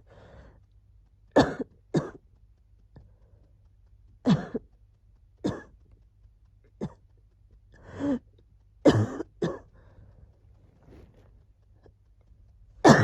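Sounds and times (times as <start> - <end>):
person coughing: 8.9 - 9.7.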